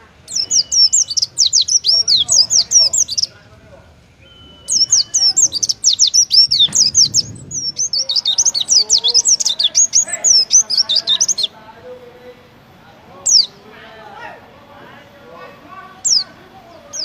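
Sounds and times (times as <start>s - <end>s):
bird singing high chirping notes: 0.0s - 3.4s, 4.0s - 11.6s, 13.1s - 13.7s, 15.8s - 17.0s.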